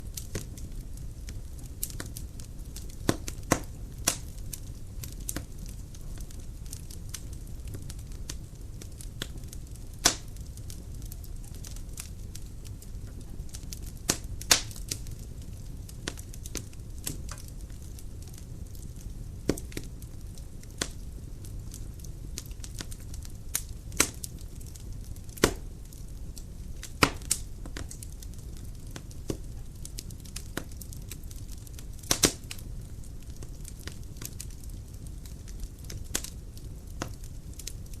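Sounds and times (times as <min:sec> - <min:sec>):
fire crackling and popping: 0:00.0 - 0:38.0
rumble of flame: 0:00.0 - 0:38.0.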